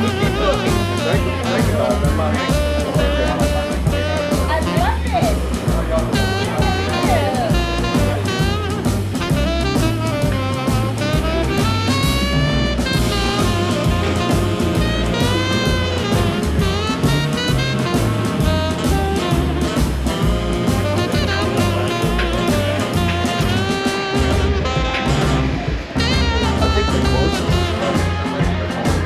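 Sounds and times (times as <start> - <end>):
swing jazz music: 0.0 - 29.0.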